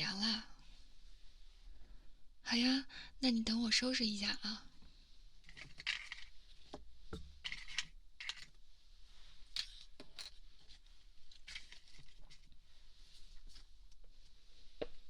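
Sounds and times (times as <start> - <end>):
rustling and scraping: 5.4 - 15.0.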